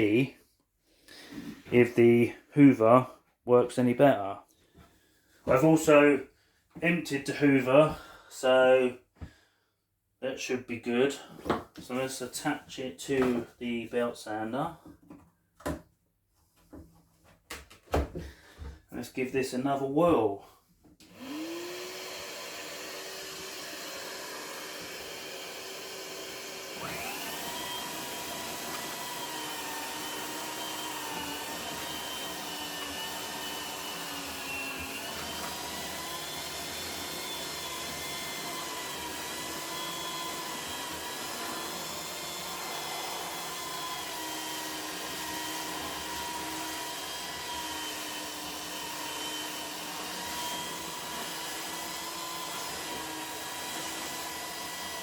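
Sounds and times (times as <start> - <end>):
belt sander whining: 21.0 - 55.0
vacuum cleaner running: 21.1 - 55.0.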